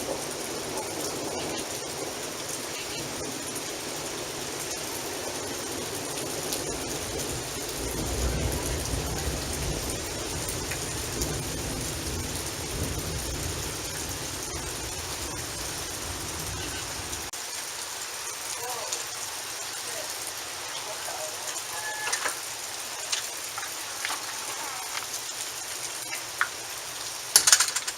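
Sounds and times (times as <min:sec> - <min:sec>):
thunder rumbling: 0:00.0 - 0:17.3
rain falling: 0:00.0 - 0:27.9.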